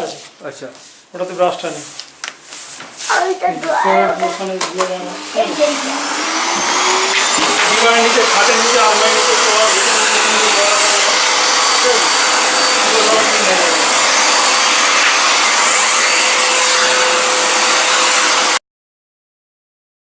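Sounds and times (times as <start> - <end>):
vacuum cleaner running: 3.8 - 18.6.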